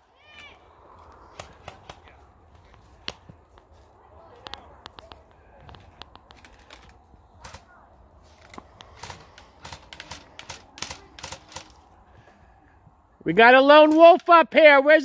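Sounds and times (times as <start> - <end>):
airsoft guns firing: 8.9 - 11.8.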